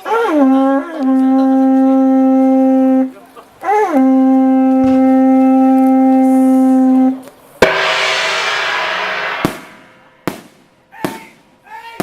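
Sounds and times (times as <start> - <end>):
conch-shell trumpet note: 0.2 - 10.2
sharp ringing crack: 7.6 - 11.2.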